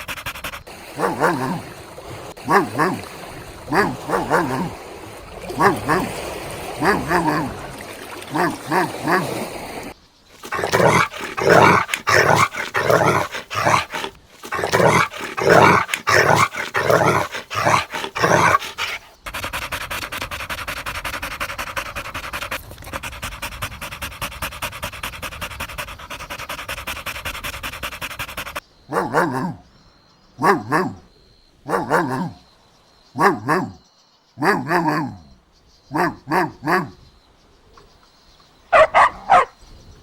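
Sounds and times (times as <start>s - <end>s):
dog panting: 0.0s - 4.8s, 5.5s - 7.6s, 8.3s - 9.5s, 10.4s - 29.6s, 31.7s - 32.4s, 36.0s - 37.0s, 38.8s - 39.5s
dog yelping whines: 1.0s - 1.6s, 3.7s - 4.8s, 38.7s - 39.5s.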